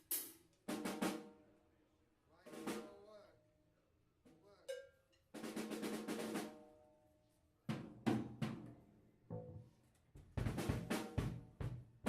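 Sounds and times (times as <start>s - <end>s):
scattered drum kit hits: 10.4s - 12.0s.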